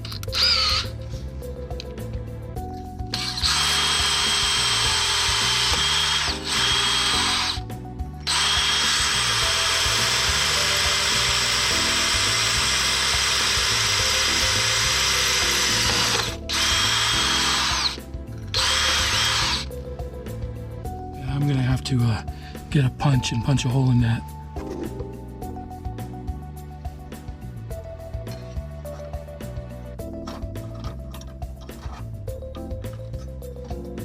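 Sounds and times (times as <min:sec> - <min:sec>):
electric drill drilling masonry: 0:00.3 - 0:01.0, 0:03.1 - 0:19.7.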